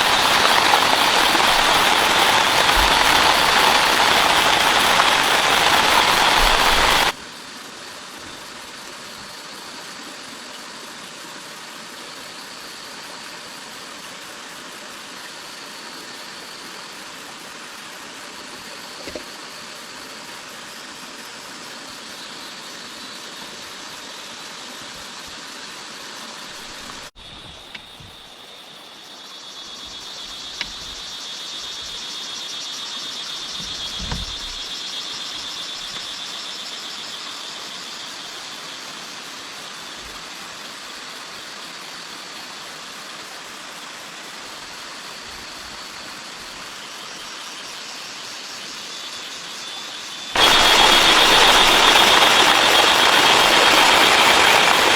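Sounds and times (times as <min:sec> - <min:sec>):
heavy rain hissing: 0:00.0 - 0:07.2, 0:33.3 - 0:35.9, 0:50.3 - 0:54.9
faint insect whine: 0:00.0 - 0:54.9.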